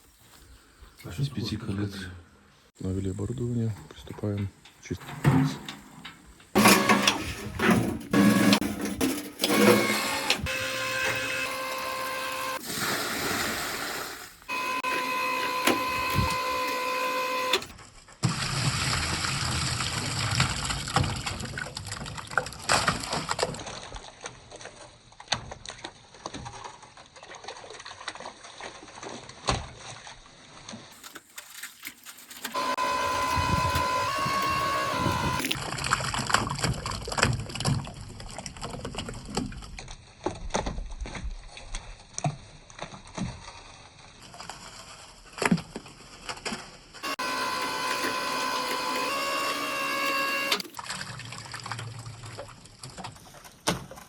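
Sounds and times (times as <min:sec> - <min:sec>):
water splashing and sloshing: 0:04.2 - 0:15.2, 0:17.0 - 0:54.0
electric motor whine: 0:09.4 - 0:12.6, 0:14.5 - 0:17.7, 0:32.6 - 0:35.6, 0:47.0 - 0:50.8.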